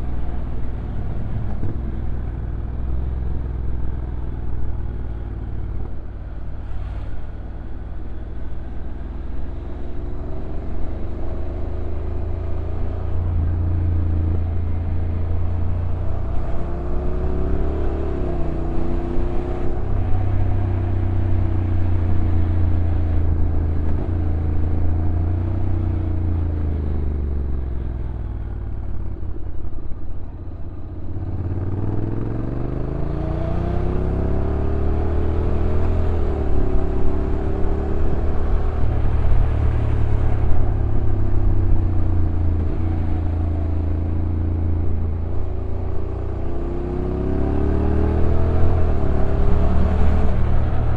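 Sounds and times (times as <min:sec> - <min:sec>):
motorcycle engine revving: 0:31.1 - 0:50.9.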